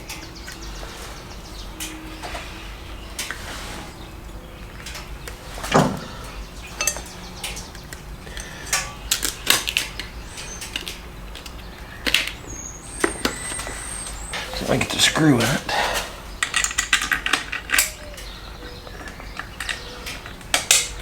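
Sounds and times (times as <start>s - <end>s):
metal parts clicking and knocking: 6.8s - 12.4s, 16.4s - 18.3s.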